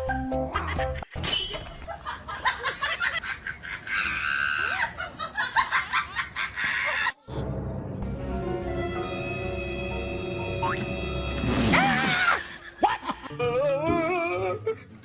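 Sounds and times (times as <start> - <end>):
person laughing: 1.9 - 7.5, 12.2 - 14.9.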